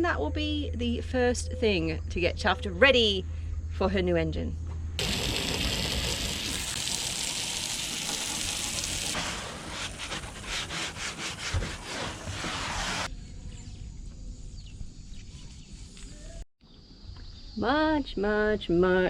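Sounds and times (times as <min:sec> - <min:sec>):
brush scrubbing a deck: 0:05.0 - 0:13.1.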